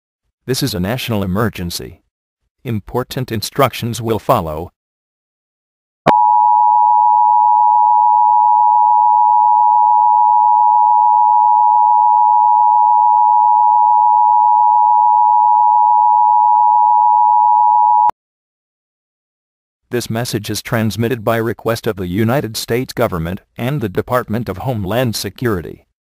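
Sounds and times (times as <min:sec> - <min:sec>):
two-tone alarm: 0:06.1 - 0:18.1.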